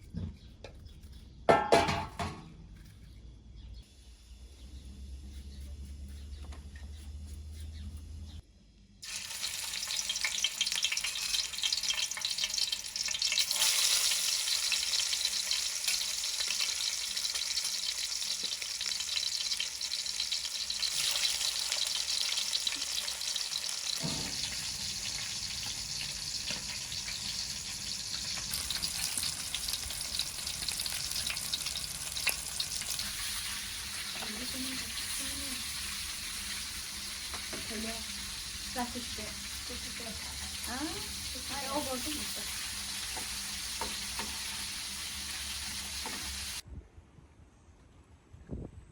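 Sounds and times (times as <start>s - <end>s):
food sizzling in a pan: 9.0s - 46.6s.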